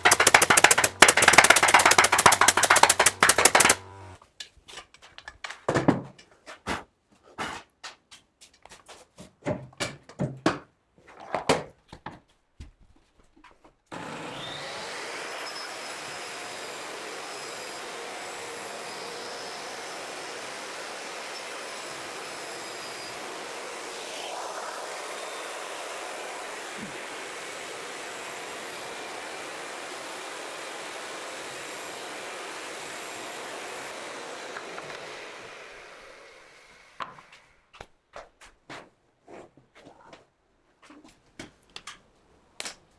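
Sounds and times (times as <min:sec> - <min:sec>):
carpentry knocks and clicks: 0:00.0 - 0:04.1
steady rushing machine noise: 0:00.0 - 0:04.2, 0:23.1 - 0:31.3.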